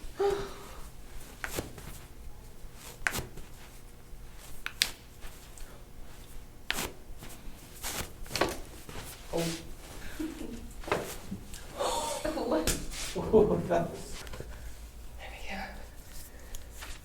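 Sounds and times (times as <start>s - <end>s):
soft rustling: 0.9s - 11.8s.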